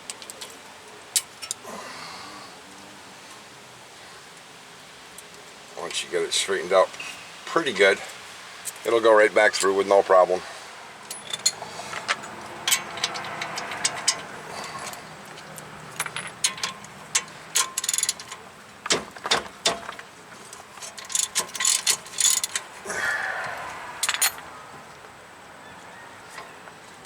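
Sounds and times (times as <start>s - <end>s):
hand tools clicking on metal: 11.1s - 22.8s, 24.0s - 24.5s.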